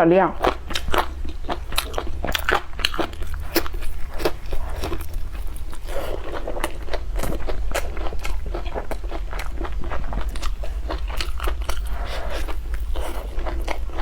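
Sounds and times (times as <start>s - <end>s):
low hum: 0.0s - 14.0s
crunchy biting and chewing: 0.3s - 14.0s.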